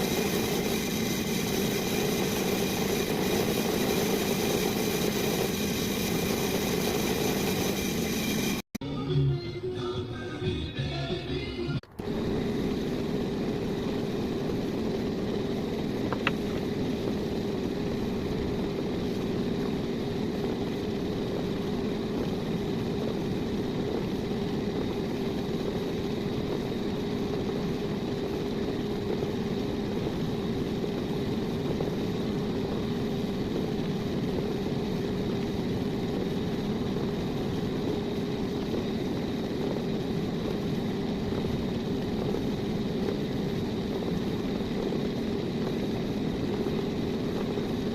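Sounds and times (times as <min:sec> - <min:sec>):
power tool motor running: 0:00.0 - 0:08.6.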